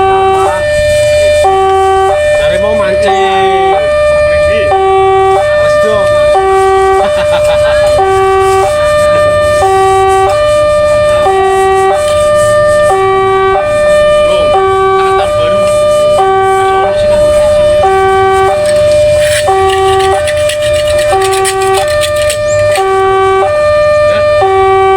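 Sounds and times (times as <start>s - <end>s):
level-crossing hi-lo warning siren: 0.0s - 24.9s.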